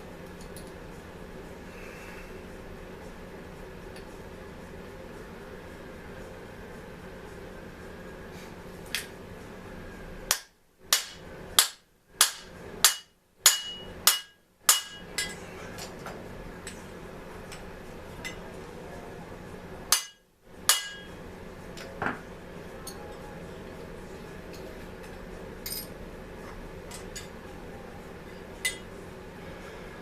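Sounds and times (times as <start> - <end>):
hammer striking metal: 10.3 - 15.4, 19.9 - 21.2.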